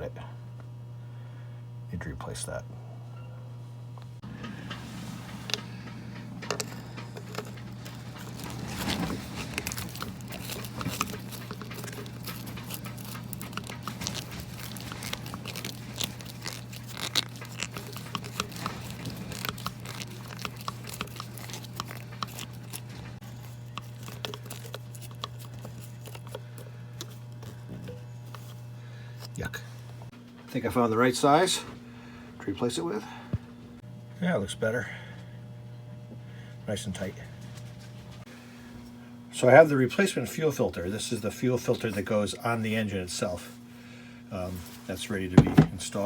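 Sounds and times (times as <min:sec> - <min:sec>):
steady low hum: 0:00.0 - 0:46.0
metal clicks and scrapes: 0:04.4 - 0:28.5.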